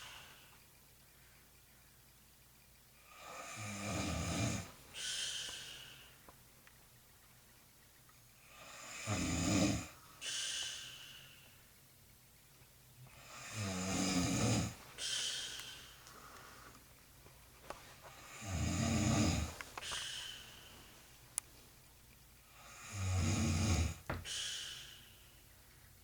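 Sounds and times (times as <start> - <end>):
woman snoring: 3.1 - 5.9, 8.4 - 10.9, 13.1 - 15.8, 18.2 - 20.4, 22.5 - 24.8
breathy out-breath: 5.0 - 6.3, 10.0 - 11.6, 15.0 - 16.8, 19.4 - 21.0, 24.1 - 25.4.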